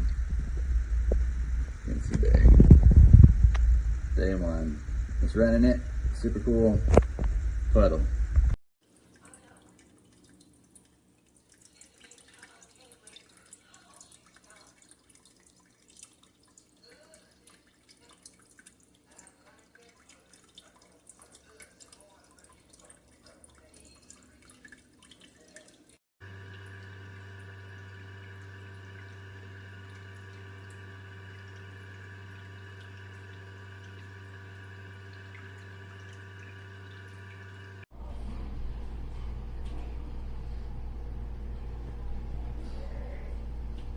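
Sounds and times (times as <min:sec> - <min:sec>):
steady hum: 0:00.0 - 0:08.6, 0:26.3 - 0:43.9
fountain water trickling and dripping: 0:08.9 - 0:37.5.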